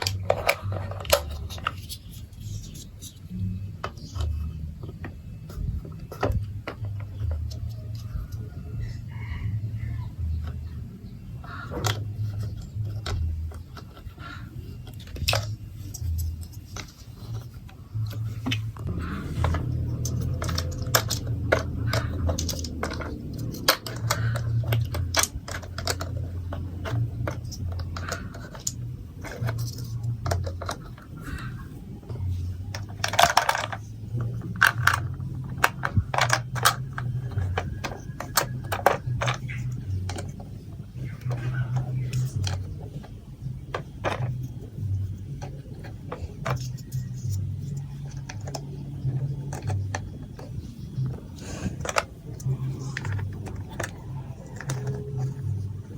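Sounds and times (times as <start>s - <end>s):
low hum: 0.0s - 55.9s
plastic blocks and marbles clicking: 0.0s - 55.9s
marbles rattling: 18.8s - 55.9s.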